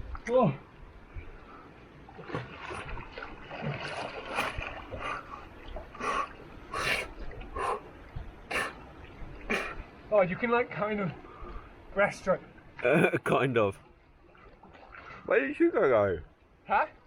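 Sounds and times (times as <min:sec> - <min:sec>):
swimmer splashing: 0:02.2 - 0:07.1.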